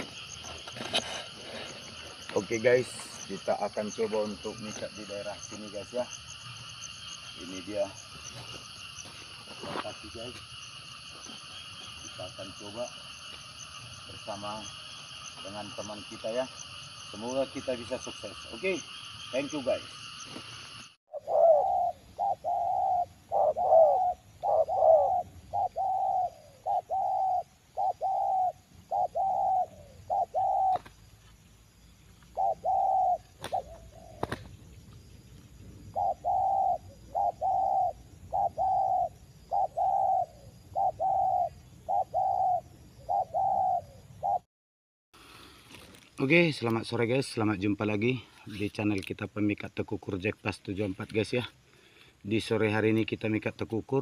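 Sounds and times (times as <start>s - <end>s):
faint insect drone: 0.0s - 44.5s, 45.2s - 54.0s
dove cooing: 21.1s - 30.9s, 32.3s - 34.5s, 35.8s - 44.4s.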